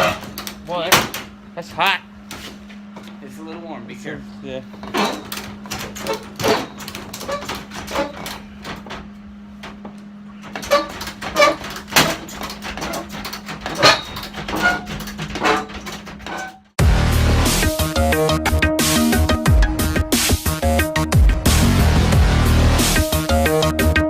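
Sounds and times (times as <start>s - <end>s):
metal knocks and clanks: 0.0s - 1.9s, 4.8s - 16.8s
steady low hum: 0.0s - 17.8s.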